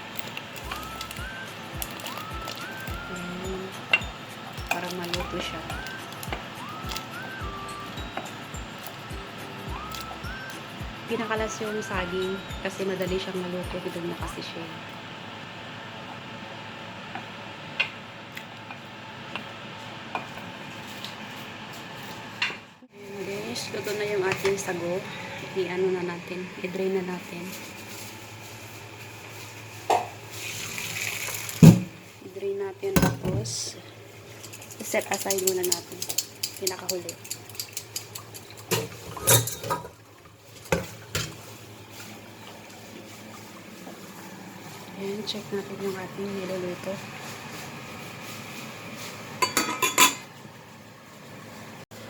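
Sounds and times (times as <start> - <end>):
kitchen utensils clicking: 34.4 - 40.0.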